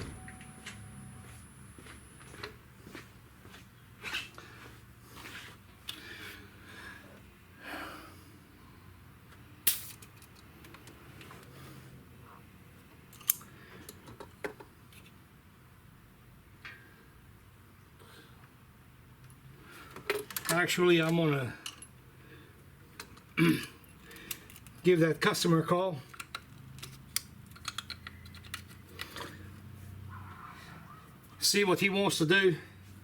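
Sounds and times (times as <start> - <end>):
handling clicks and rattles: 24.0 - 24.9, 26.0 - 29.4.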